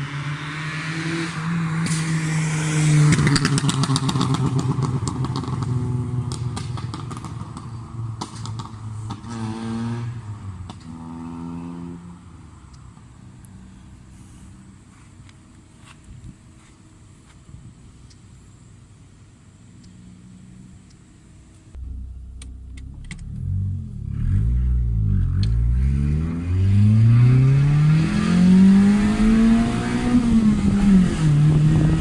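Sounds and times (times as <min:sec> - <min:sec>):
car engine revving: 0:00.0 - 0:12.4, 0:21.8 - 0:32.0
exhaust popping and crackling: 0:03.0 - 0:11.0, 0:21.7 - 0:28.2.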